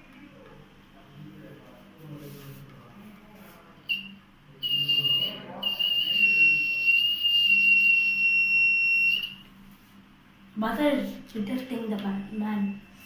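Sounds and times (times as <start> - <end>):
alarm buzzer tone: 3.9 - 9.4, 12.1 - 13.0.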